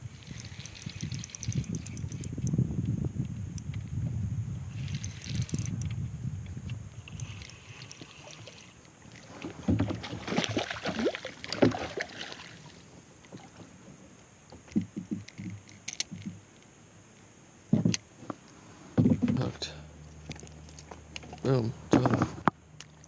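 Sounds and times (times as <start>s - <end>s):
water sloshing and splashing: 7.0s - 13.9s, 20.2s - 23.0s
soft thumps: 19.0s - 19.5s.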